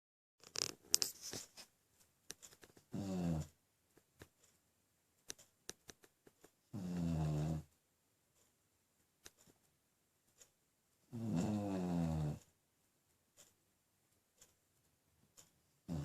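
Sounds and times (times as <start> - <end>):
dog snoring: 2.9 - 3.6, 6.7 - 7.7, 11.1 - 12.5.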